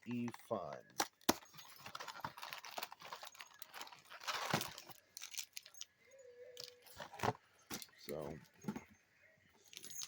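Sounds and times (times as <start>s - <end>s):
plastic wrapper crinkling: 0.0s - 5.9s.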